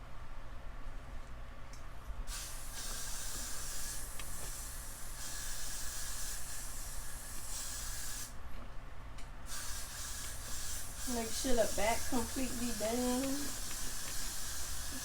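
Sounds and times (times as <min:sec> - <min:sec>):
aerosol spray can hissing: 0:02.3 - 0:08.4, 0:09.5 - 0:15.0.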